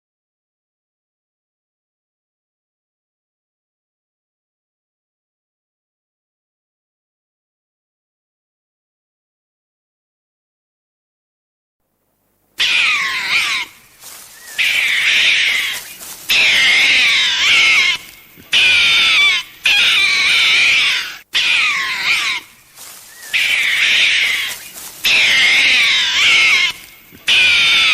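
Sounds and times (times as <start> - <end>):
animal high-pitched calls: 12.6 - 27.9.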